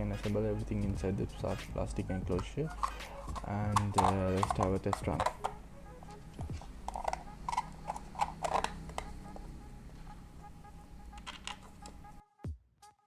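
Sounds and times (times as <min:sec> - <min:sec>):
steady low hum: 0:00.0 - 0:12.2
electronic music with a beat: 0:00.0 - 0:12.5
plastic parts clicking: 0:02.4 - 0:05.6, 0:06.9 - 0:09.1, 0:11.2 - 0:12.0.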